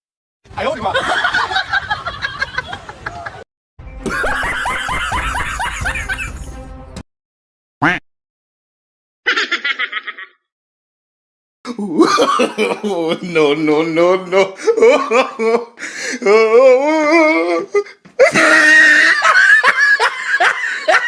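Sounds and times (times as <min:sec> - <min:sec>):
comedic laughter effects: 0:04.0 - 0:06.6, 0:09.2 - 0:10.5, 0:11.8 - 0:13.3, 0:18.2 - 0:21.0.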